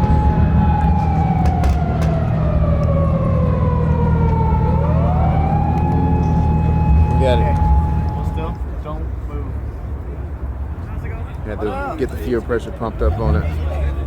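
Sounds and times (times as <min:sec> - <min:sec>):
siren wailing: 0:00.0 - 0:08.7
vehicle engine idling: 0:00.0 - 0:09.0.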